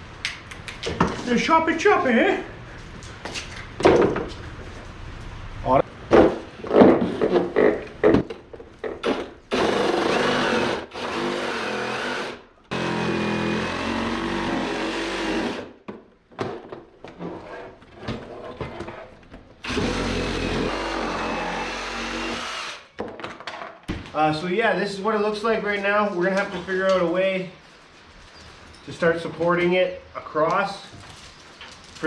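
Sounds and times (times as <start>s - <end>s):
power saw cutting plastic: 9.0s - 15.8s, 19.6s - 22.9s.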